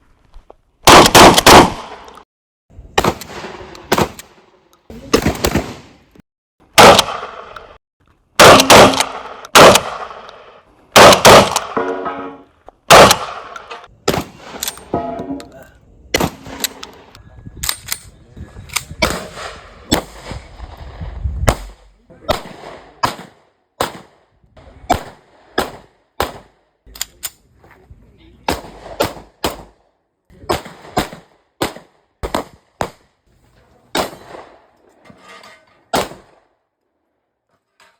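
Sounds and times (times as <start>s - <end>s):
gunshots with echoing tails: 0.9s - 2.1s, 2.9s - 6.0s, 6.8s - 7.8s, 8.4s - 15.4s, 16.2s - 17.1s, 19.0s - 24.3s, 24.9s - 26.6s.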